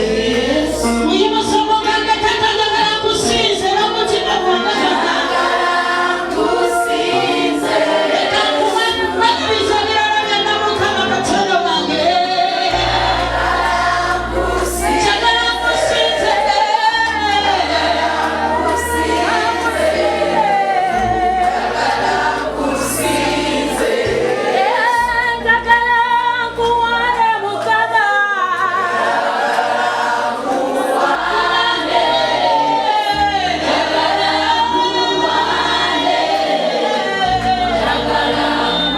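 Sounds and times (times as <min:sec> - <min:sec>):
sustained bass line: 0:00.0 - 0:28.5, 0:31.1 - 0:38.9
choir singing gospel music: 0:00.0 - 0:38.9.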